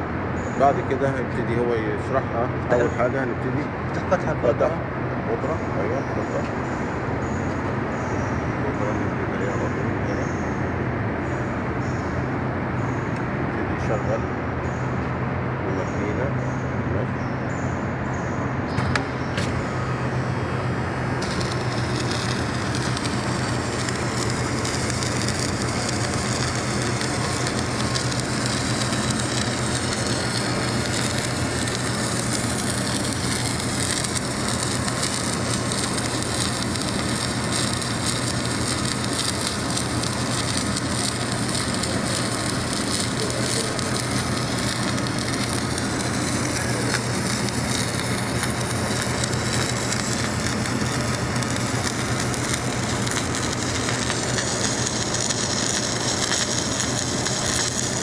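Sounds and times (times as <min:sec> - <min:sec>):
welding machine humming: 0:18.4 - 0:58.0
welding arc crackling: 0:18.7 - 0:58.0.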